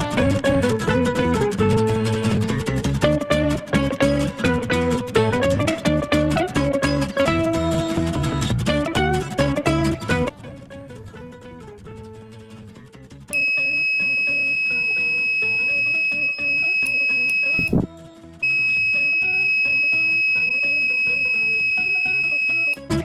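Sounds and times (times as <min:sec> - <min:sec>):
guitar music: 0:00.0 - 0:17.6
electronic buzzer alarm beeping: 0:13.4 - 0:17.8, 0:18.4 - 0:22.8.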